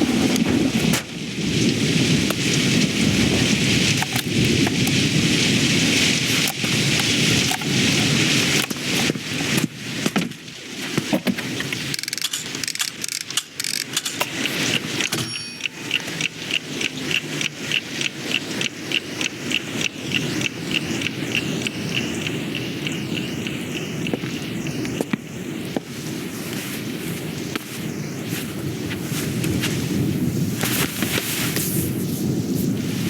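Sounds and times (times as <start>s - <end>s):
heavy rain: 0.0s - 33.0s
regular ticking: 12.0s - 25.0s.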